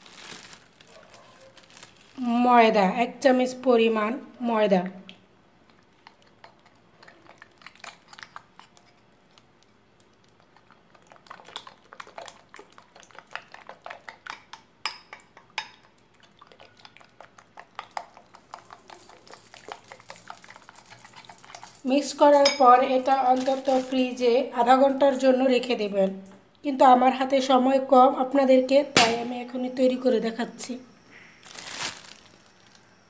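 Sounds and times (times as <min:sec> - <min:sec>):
spoon scraping a bowl: 0:06.0 - 0:09.2.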